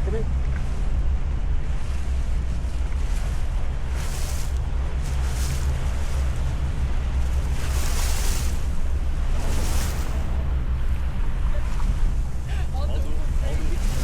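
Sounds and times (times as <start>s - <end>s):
boat motor rumble: 0.0s - 14.0s
wind buffeting microphone: 0.0s - 14.0s
rushing hissing water: 3.4s - 14.0s.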